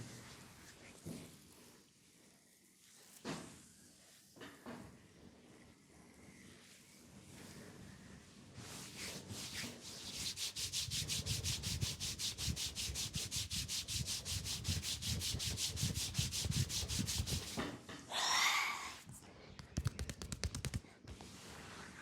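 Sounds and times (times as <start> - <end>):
hands rubbing skin: 9.0 - 17.7, 18.9 - 21.4.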